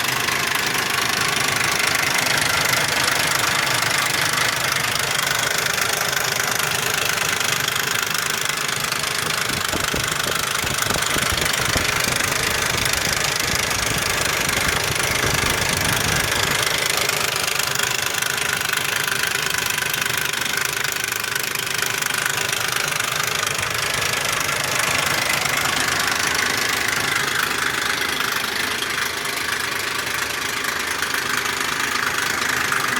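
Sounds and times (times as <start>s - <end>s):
engine running with loud rattle: 0.0s - 32.9s.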